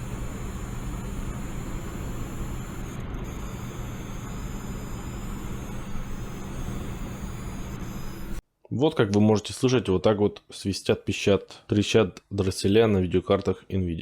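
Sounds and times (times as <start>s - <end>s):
high-pitched coil whine: 0.0s - 8.4s
low hum: 0.0s - 8.4s.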